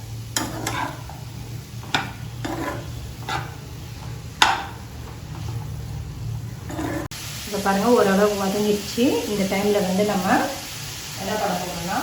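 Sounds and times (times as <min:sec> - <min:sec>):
light sizzle: 0:00.0 - 0:12.0
spatula scraping a frying pan: 0:00.3 - 0:05.7, 0:06.6 - 0:07.1.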